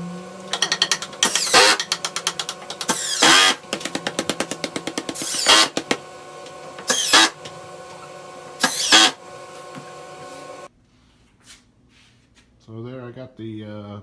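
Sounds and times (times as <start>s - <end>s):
power drill motor whine: 0.0s - 4.0s, 5.1s - 10.7s
steady hum: 0.0s - 10.7s.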